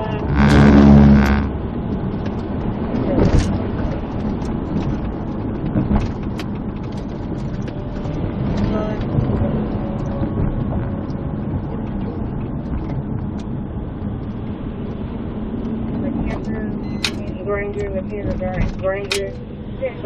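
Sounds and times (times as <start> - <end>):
short pitched tone: 0.0 - 1.5, 16.7 - 17.4
vehicle cabin rumble: 0.0 - 20.0.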